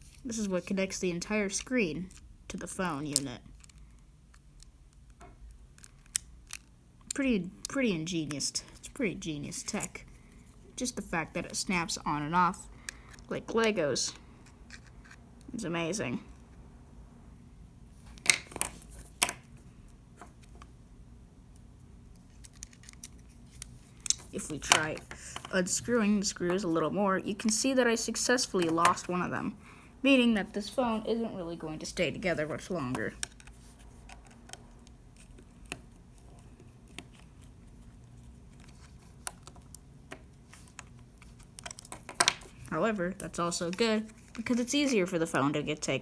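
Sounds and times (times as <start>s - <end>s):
small screwdriver and parts clicking: 2.8s - 7.8s.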